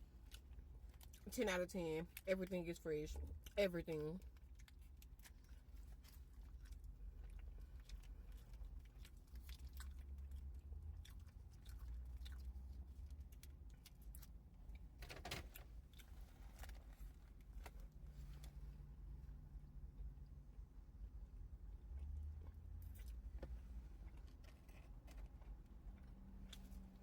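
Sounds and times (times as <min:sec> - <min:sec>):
person chewing food: 0:00.0 - 0:01.2, 0:04.2 - 0:18.6, 0:21.9 - 0:27.0
faint low rumble: 0:00.0 - 0:27.0.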